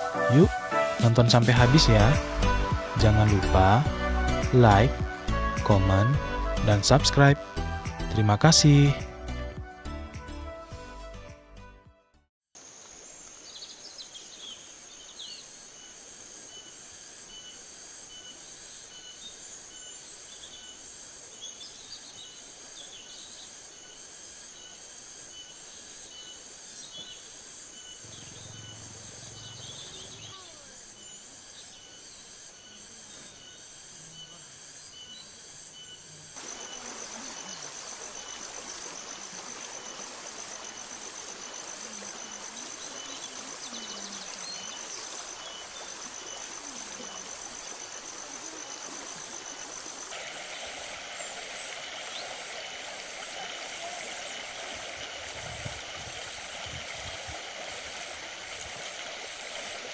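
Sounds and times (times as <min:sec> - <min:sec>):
birds chirping: 0:00.0 - 0:09.1, 0:12.9 - 0:59.9
buzzing insect trill: 0:12.6 - 0:59.9
high-pitched insect drone: 0:12.6 - 0:59.9
repeating insect chirps: 0:12.6 - 0:59.9
rushing hiss: 0:12.6 - 0:59.9.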